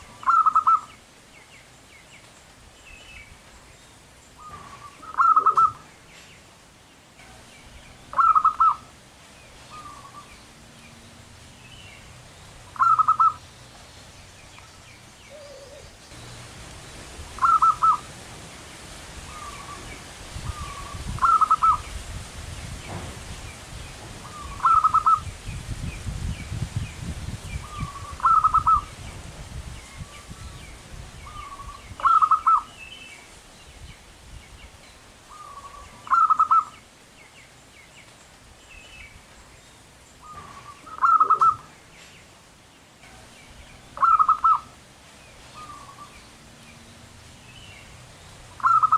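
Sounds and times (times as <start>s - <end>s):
dove cooing: 0.0s - 0.9s, 4.4s - 5.9s, 8.1s - 8.9s, 12.7s - 13.4s, 15.3s - 16.0s, 17.4s - 18.1s, 20.5s - 21.8s, 24.2s - 25.2s, 27.6s - 28.9s, 31.3s - 32.7s, 35.3s - 36.7s, 40.2s - 41.7s, 44.0s - 44.8s, 48.6s - 48.9s.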